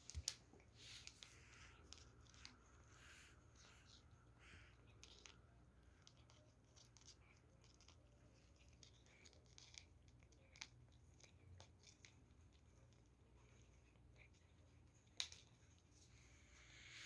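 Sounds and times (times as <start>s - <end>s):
cat chewing crunchy treats: 0.0s - 16.4s.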